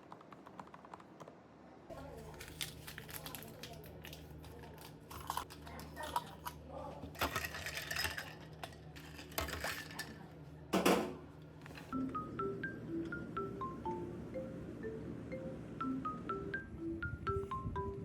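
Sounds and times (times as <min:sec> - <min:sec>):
small objects clicking and rustling: 0:02.0 - 0:10.2
steady low hum: 0:06.4 - 0:18.0
marimba-like melody: 0:11.9 - 0:18.0.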